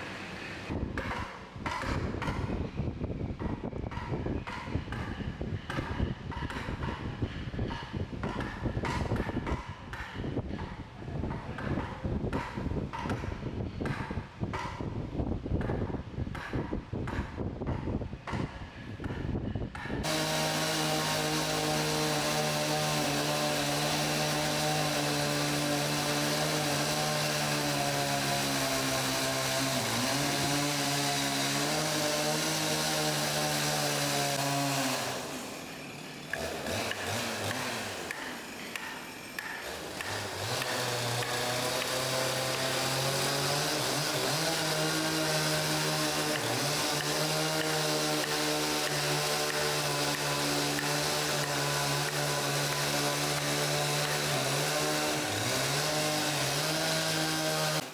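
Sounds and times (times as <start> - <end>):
hiss of cutting wood: 20.0 - 35.7, 36.3 - 57.9
power tool motor running: 20.0 - 57.9.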